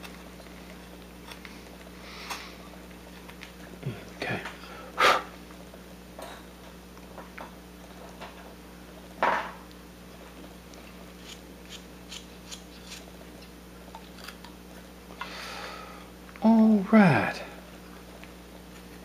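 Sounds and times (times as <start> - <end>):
carving tool clicks and scrapes: 11.2 - 13.1
person breathing: 15.2 - 16.1.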